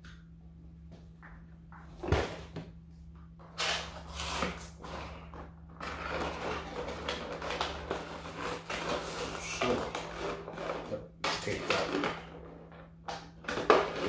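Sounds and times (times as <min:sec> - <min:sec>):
faint electrical hum: 0:00.0 - 0:14.0
packaging rustling and scraping: 0:03.4 - 0:14.0.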